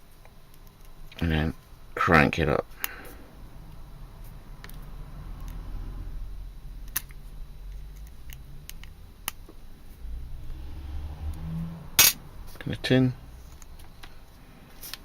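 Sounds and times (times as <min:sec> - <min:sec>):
low handling rumble: 0:03.0 - 0:14.4.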